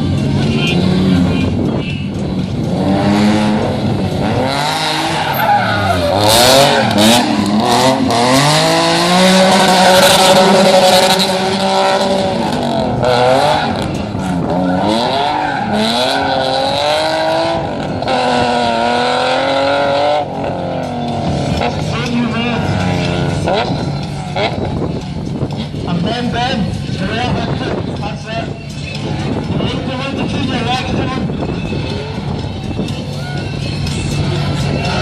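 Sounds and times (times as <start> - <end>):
car engine revving: 0.0 - 27.9
tyres squealing and skidding: 4.2 - 18.4.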